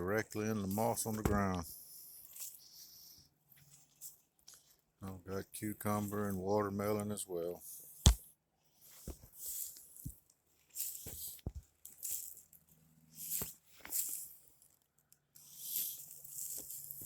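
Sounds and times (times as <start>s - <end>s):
rustling and crackling: 8.8s - 17.0s.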